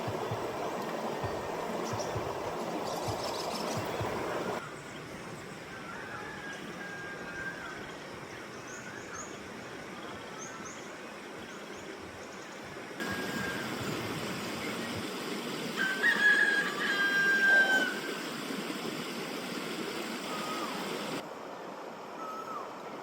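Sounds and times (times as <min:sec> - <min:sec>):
river flowing: 0:00.0 - 0:04.6, 0:12.8 - 0:23.0
small birds chirping: 0:00.0 - 0:04.9.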